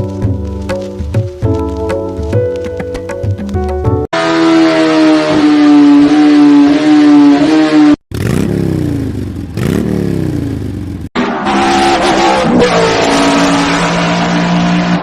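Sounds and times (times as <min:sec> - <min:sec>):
motorcycle engines revving: 0:04.2 - 0:15.0.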